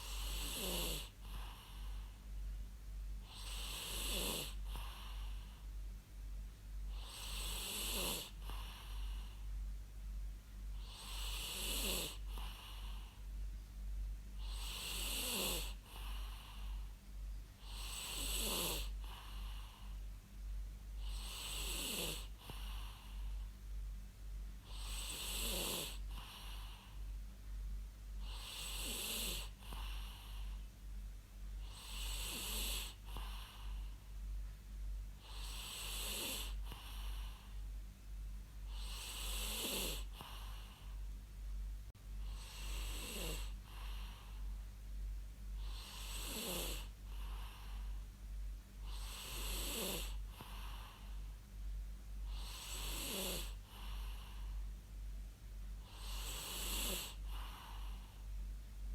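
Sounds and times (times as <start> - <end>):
person snoring: 0.0 - 2.0, 3.3 - 5.4, 6.9 - 9.4, 10.8 - 13.1, 14.4 - 16.8, 17.6 - 19.9, 21.0 - 23.4, 24.7 - 26.8, 28.2 - 30.5, 31.6 - 33.9, 35.2 - 37.5, 38.7 - 40.9, 42.2 - 44.4, 45.6 - 47.9, 48.9 - 51.2, 52.3 - 54.5, 55.9 - 58.1
constant low hum: 0.0 - 58.9.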